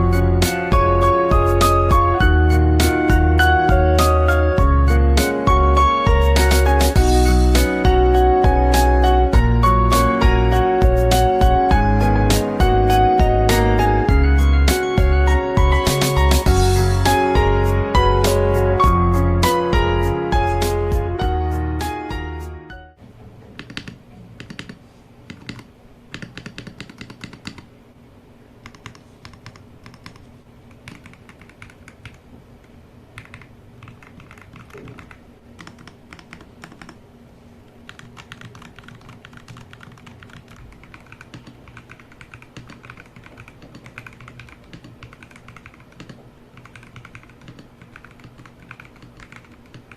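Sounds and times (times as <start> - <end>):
typing on mechanical keyboard: 23.6 - 27.7, 28.6 - 32.2, 33.2 - 37.0, 37.8 - 49.9.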